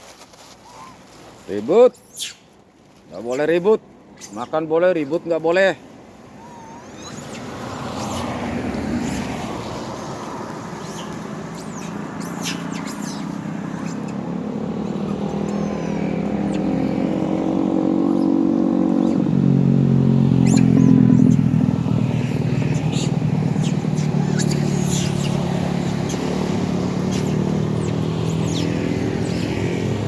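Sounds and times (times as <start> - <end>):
vehicle engine approaching: 6.4 - 30.0.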